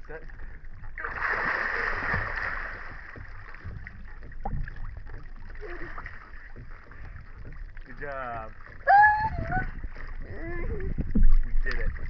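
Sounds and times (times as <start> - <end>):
water sloshing and dripping: 0.0 - 12.0
big splash in pool water: 1.0 - 3.2.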